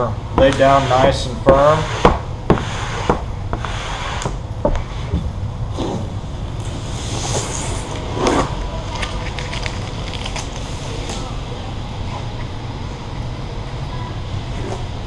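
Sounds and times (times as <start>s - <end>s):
steady low hum: 0.0s - 15.0s
squeegee scraping vinyl film: 6.6s - 11.3s.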